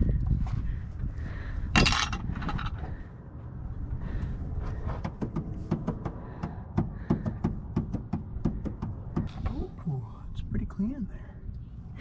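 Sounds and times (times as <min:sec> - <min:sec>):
tools clicking and knocking: 0:01.8 - 0:02.8.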